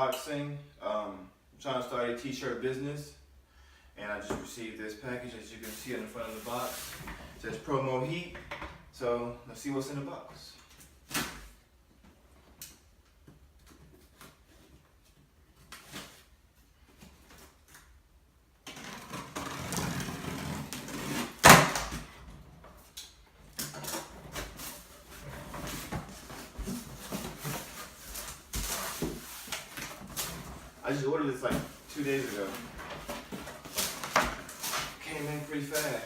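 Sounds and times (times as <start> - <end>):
cardboard rustling and scraping: 5.6 - 7.4, 18.6 - 22.9, 23.8 - 36.0.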